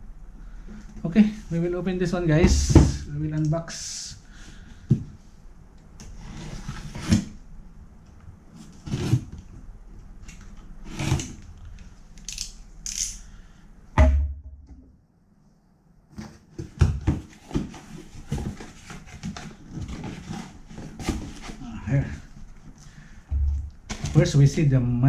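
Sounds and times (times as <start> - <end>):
heavy thump: 2.4 - 3.1, 14.0 - 14.8, 23.3 - 23.9
cardboard scraping and rustling: 6.2 - 7.4, 8.6 - 9.5, 16.2 - 22.4, 23.8 - 24.4.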